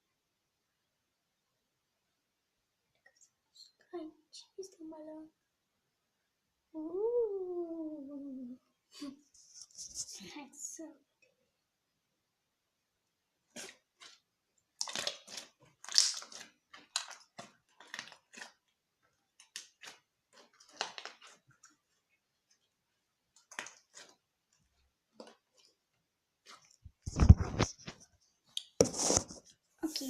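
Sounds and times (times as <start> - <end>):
slime being squished by hand: 13.6 - 22.5.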